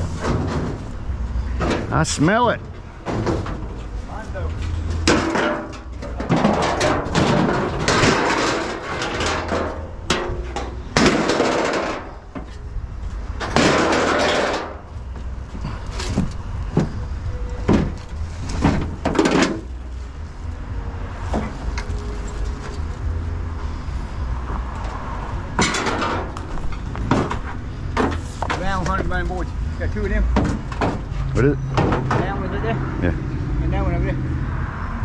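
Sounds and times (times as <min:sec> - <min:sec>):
metal knocks and clanks: 0:00.0 - 0:12.6, 0:13.2 - 0:20.0, 0:24.3 - 0:32.5.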